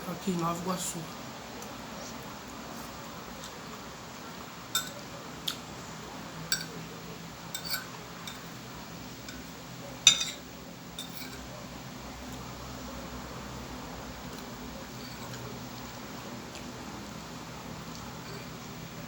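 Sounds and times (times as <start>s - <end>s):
cutlery clinking against a plate: 4.7s - 5.7s, 6.5s - 6.8s, 7.5s - 8.6s, 9.2s - 11.5s, 14.3s - 15.5s, 18.2s - 18.6s.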